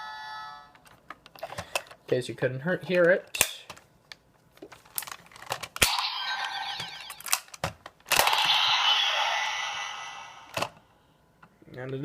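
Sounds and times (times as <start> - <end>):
toy belt electronic sound effects: 5.9 - 7.5, 8.2 - 10.6.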